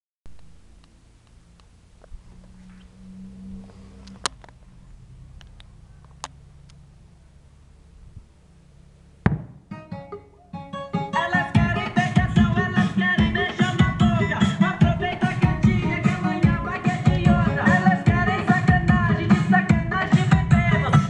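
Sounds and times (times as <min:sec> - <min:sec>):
low steady hum: 0:00.3 - 0:20.8
loud thump: 0:09.2 - 0:09.7
music through sound system: 0:09.6 - 0:21.0.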